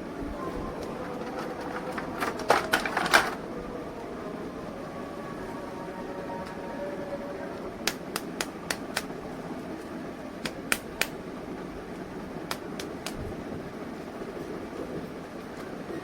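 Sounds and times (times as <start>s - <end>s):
steady background hum: 0.0s - 16.0s
plastic toy pieces clicking: 1.3s - 3.4s.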